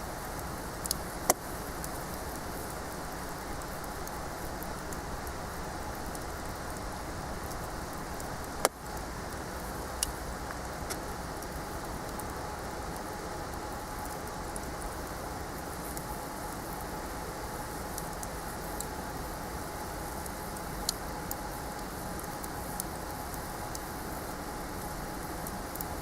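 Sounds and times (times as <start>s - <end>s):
campfire hissing and crackling: 0.0s - 26.0s
fire popping: 0.2s - 12.3s.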